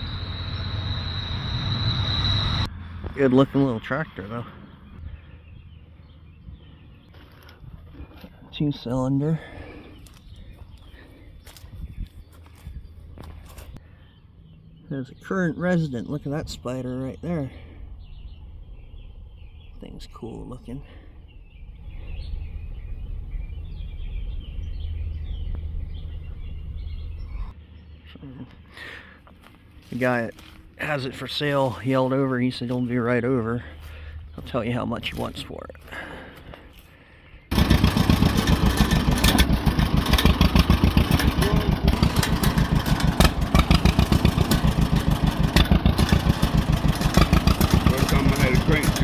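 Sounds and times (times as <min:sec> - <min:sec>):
two-cylinder tractor engine running: 0:00.0 - 0:04.4, 0:21.8 - 0:27.6, 0:37.5 - 0:49.0
small birds chirping: 0:00.0 - 0:49.0
wind rumble on microphone: 0:10.3 - 0:13.2, 0:21.0 - 0:27.5.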